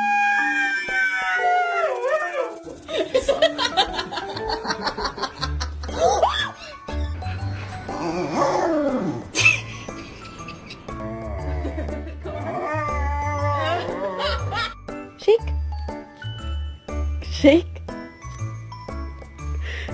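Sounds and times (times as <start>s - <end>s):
dog howling: 0.0s - 2.7s, 11.0s - 14.5s
music playing: 0.0s - 19.9s.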